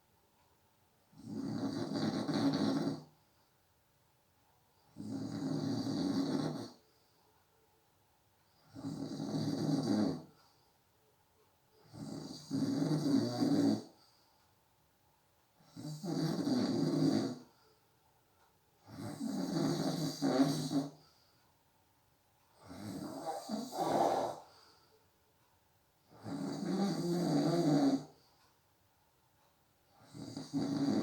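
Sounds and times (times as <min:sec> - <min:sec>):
person snoring: 0:01.2 - 0:03.1, 0:05.0 - 0:06.8, 0:08.7 - 0:10.4, 0:11.8 - 0:13.9, 0:15.6 - 0:17.5, 0:18.9 - 0:21.0, 0:22.6 - 0:24.6, 0:26.1 - 0:28.2, 0:30.0 - 0:31.0.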